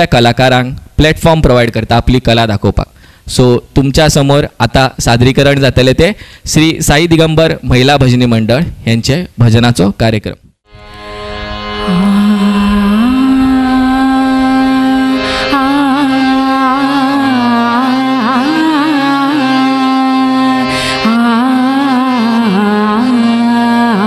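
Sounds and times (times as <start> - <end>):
devotional music melody: 10.7 - 24.0.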